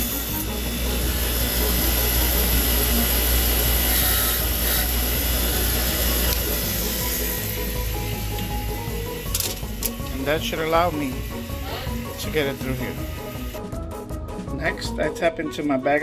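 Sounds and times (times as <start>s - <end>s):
screw grinding on wheel: 0.0s - 8.5s
grinding wheel motor hum: 0.0s - 13.7s.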